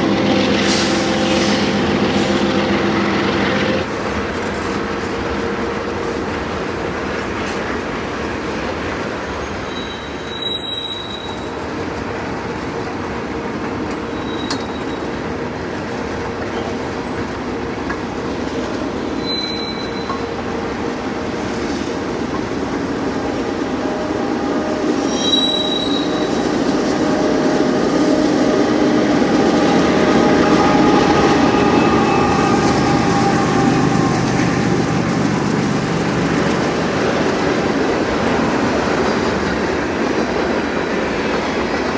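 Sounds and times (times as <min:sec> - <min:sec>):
train wheels on rails: 0:00.0 - 0:41.9
high-pitched wheel squeals: 0:09.4 - 0:11.5, 0:14.1 - 0:15.1, 0:19.2 - 0:20.2, 0:25.0 - 0:26.4.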